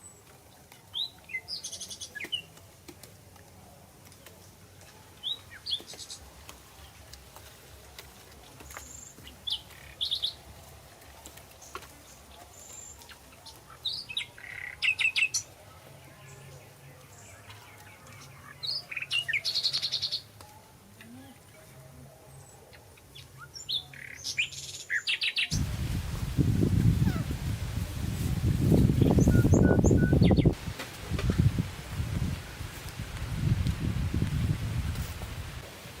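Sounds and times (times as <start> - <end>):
birds chirping: 26.7 - 27.4, 28.7 - 30.6.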